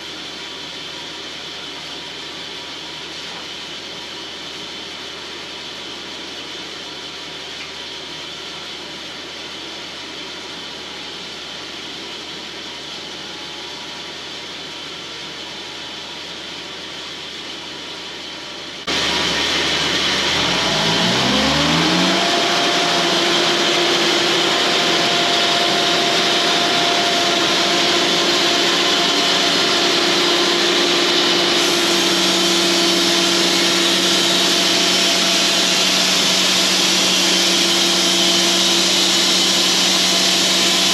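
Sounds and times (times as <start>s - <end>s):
sawmill machine hum: 0.0s - 40.9s
sawmill whine rising in pitch: 8.6s - 40.9s.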